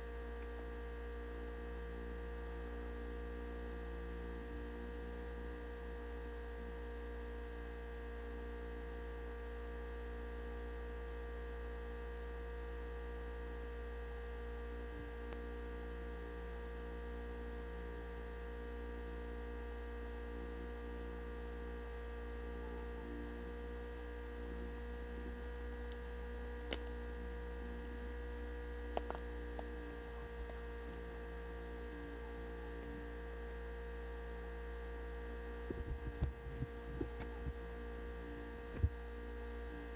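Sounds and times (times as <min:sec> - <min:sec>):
electrical hum: 0:00.0 - 0:39.9
sharp clicks: 0:29.0 - 0:29.7.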